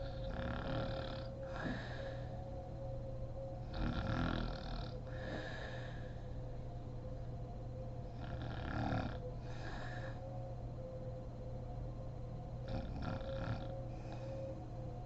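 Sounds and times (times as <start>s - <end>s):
woman snoring: 0.0s - 2.0s, 3.7s - 5.7s, 8.2s - 10.1s, 12.7s - 13.8s
steady background hum: 0.0s - 15.0s.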